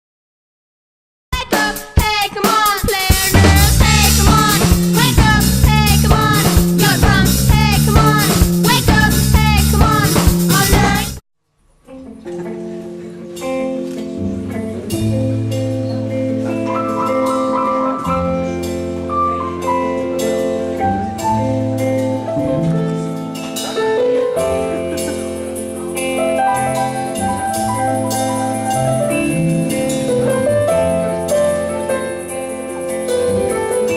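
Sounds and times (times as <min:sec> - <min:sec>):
quiet instrumental music: 0:11.7 - 0:33.9.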